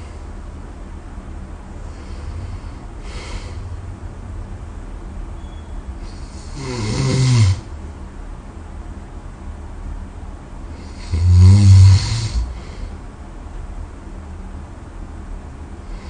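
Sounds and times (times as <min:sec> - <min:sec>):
steady low hum: 0:00.0 - 0:16.0
soft breath: 0:01.8 - 0:03.8, 0:12.3 - 0:13.1
person snoring: 0:06.0 - 0:07.7, 0:10.8 - 0:12.9.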